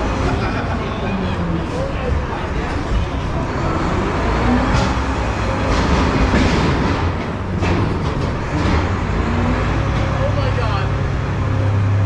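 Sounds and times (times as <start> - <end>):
heavy low rumble: 0.0 - 12.0
clanks and clatter: 1.6 - 10.4.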